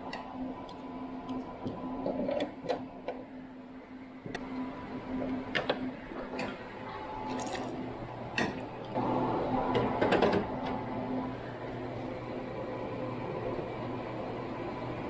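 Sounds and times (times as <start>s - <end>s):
low electrical hum: 0.0s - 15.0s.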